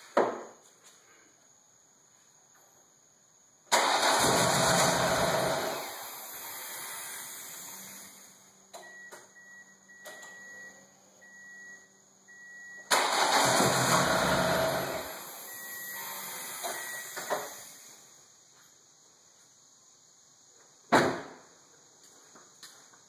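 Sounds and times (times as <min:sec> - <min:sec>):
car engine cranking without starting: 0:03.7 - 0:08.2, 0:12.8 - 0:17.8
high electronic beep: 0:08.8 - 0:12.9, 0:15.5 - 0:17.2.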